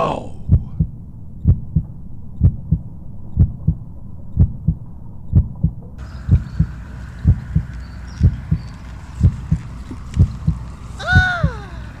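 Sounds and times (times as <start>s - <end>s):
low rumble: 0.3s - 12.0s
heartbeat thumps: 0.4s - 3.8s, 4.4s - 11.6s.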